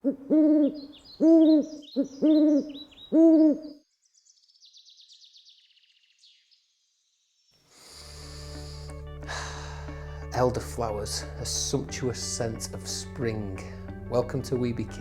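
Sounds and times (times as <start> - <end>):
bird hooting call: 0.0 - 3.8
small birds chirping: 0.0 - 8.8.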